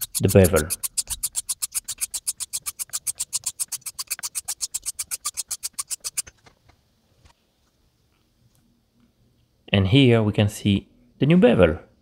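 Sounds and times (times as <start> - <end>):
razor blade scraping on sharpening plate: 0.0 - 6.3.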